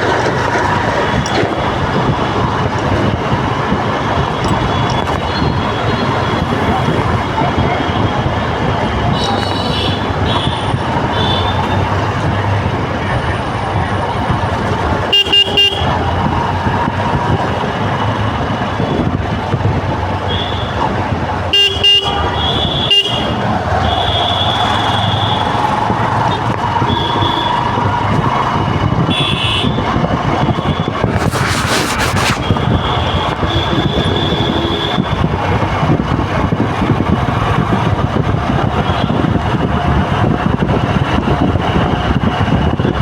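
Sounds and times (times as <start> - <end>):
traffic engines running: 0.0 - 43.0
car horn honks: 29.1 - 29.9.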